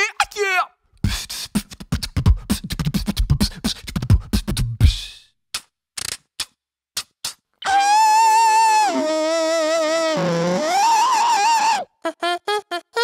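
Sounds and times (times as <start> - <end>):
vocal beatboxing: 1.0 - 7.5.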